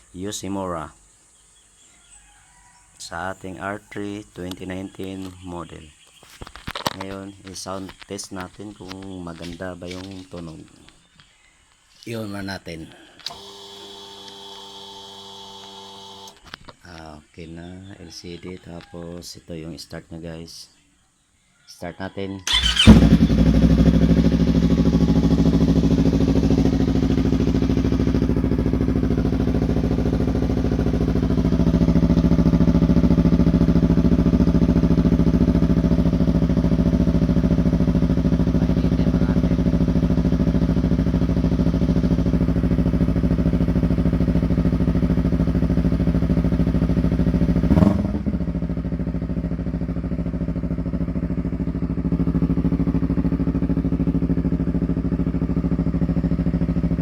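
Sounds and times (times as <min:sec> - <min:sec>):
motorcycle engine idling: 0:22.5 - 0:57.0.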